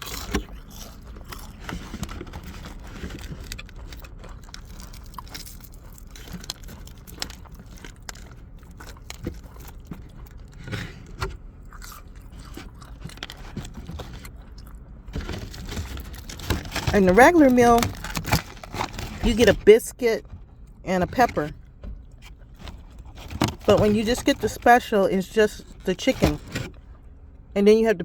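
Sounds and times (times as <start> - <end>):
person chewing crunchy chicken: 0.0 - 17.1.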